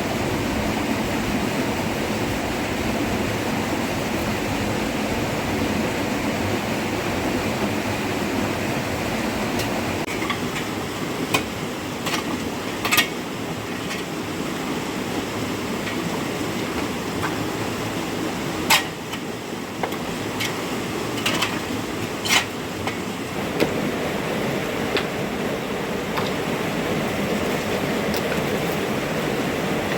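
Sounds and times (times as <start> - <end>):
heavy rain: 0.0 - 29.9
running water: 0.0 - 29.9.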